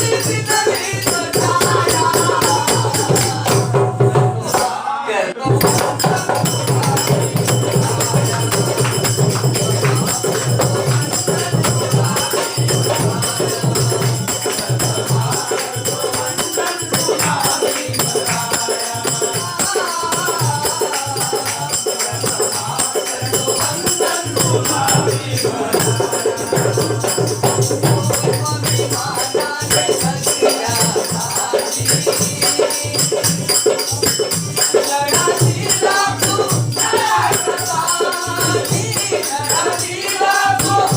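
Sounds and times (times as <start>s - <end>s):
jingling percussion beat: 0.0s - 4.8s, 5.4s - 40.9s
folk singers singing: 0.0s - 40.9s.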